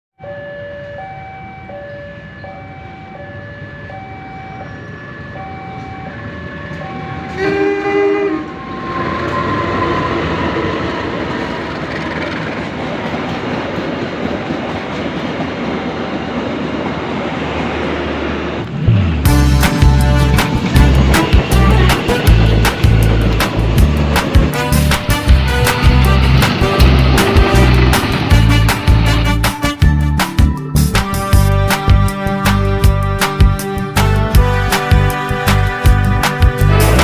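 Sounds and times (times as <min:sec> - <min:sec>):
level crossing alarm tones: 0:00.2 - 0:11.2
train rumbling and clattering past: 0:04.6 - 0:37.0
train horn blast: 0:07.3 - 0:10.9, 0:19.3 - 0:30.2, 0:31.0 - 0:37.0.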